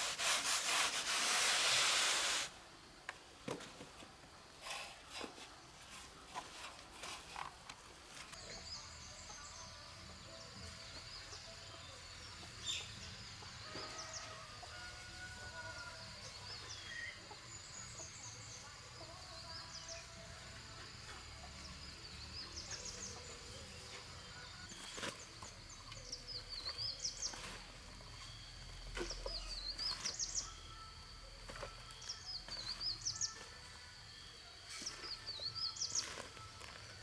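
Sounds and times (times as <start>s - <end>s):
small bird singing: 8.4s - 14.9s, 15.8s - 37.0s
steady high-pitched whine: 15.1s - 37.0s.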